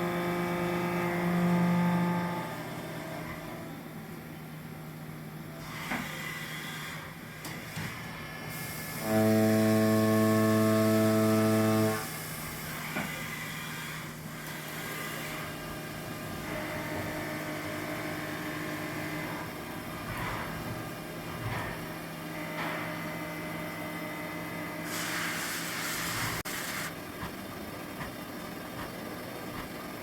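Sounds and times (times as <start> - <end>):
loud buzzing cutting tone: 0.0 - 2.6, 9.0 - 12.2
milling machine hum: 0.0 - 7.0, 8.0 - 30.0.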